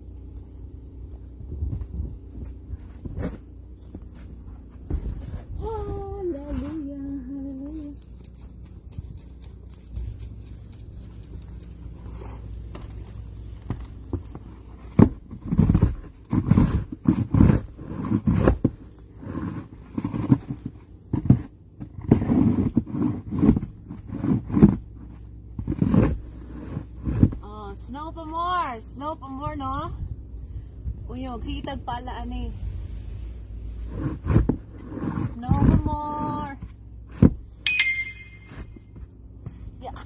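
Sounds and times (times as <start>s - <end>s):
snow shovel scraping snow: 14.6s - 27.6s, 33.8s - 37.4s.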